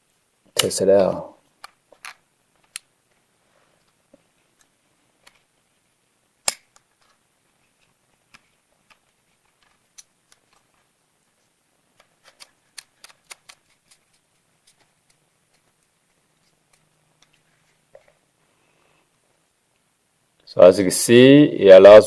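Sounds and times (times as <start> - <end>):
loud plastic snap: 6.4 - 6.8.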